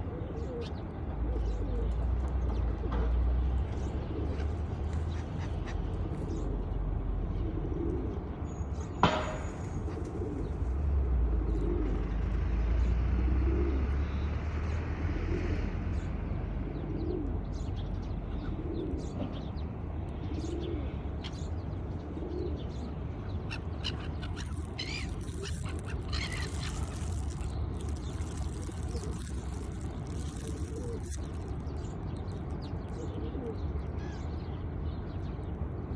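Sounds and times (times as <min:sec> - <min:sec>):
pigeons cooing: 0:00.0 - 0:08.4, 0:09.4 - 0:10.7, 0:11.3 - 0:12.2, 0:18.4 - 0:19.4, 0:20.2 - 0:33.6.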